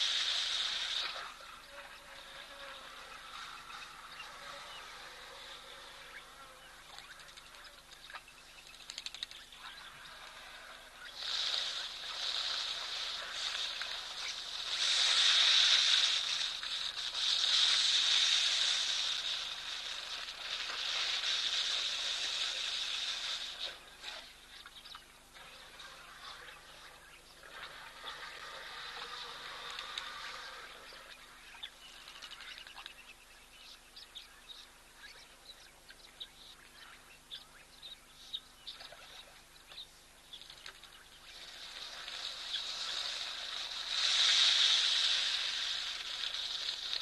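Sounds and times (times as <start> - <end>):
high-pitched animal chorus: 0.0 - 33.8.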